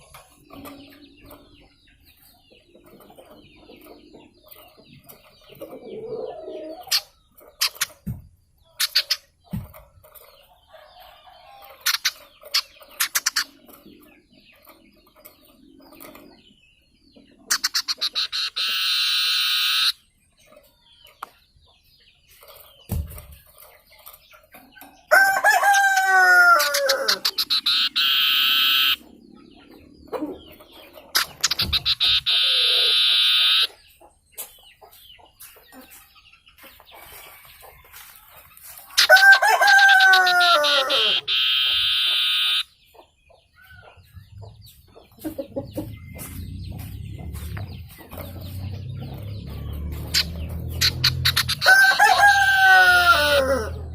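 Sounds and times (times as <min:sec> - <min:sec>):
bird buzzing trills: 0:31.2 - 0:33.7.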